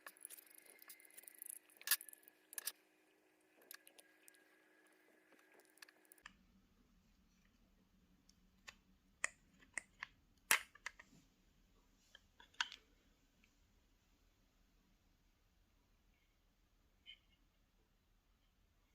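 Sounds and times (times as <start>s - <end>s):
small plastic parts clicking: 0.0s - 2.8s
faint steady hum: 0.0s - 18.9s.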